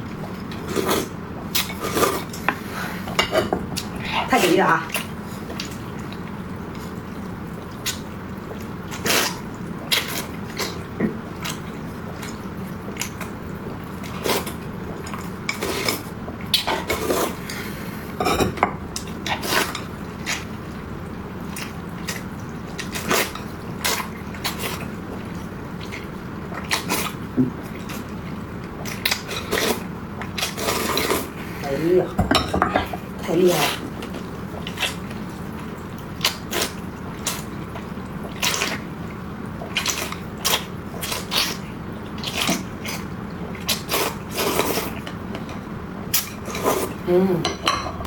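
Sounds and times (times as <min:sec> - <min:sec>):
slurping and chewing noodles: 0:00.3 - 0:03.1, 0:07.7 - 0:18.0, 0:21.4 - 0:31.6, 0:33.5 - 0:38.9, 0:39.6 - 0:47.0.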